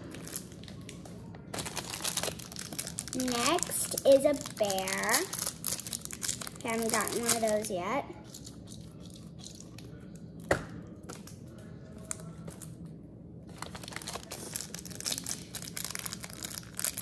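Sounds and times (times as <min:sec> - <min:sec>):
plastic packaging crinkling: 0:00.0 - 0:09.7, 0:13.5 - 0:17.0.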